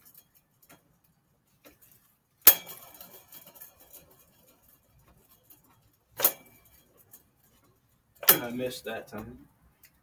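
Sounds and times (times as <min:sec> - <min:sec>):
light metal rattling: 0:00.0 - 0:10.0
metal tool clanking on metal: 0:02.4 - 0:04.6, 0:06.2 - 0:07.1, 0:08.2 - 0:08.7.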